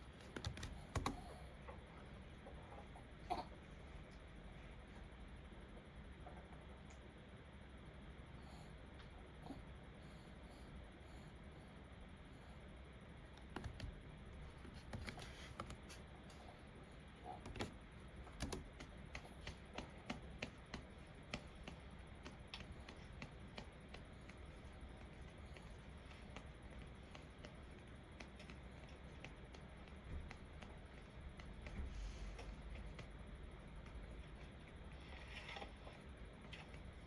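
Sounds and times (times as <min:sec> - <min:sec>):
keyboard typing: 0:00.0 - 0:01.4, 0:13.4 - 0:16.1, 0:17.4 - 0:37.0.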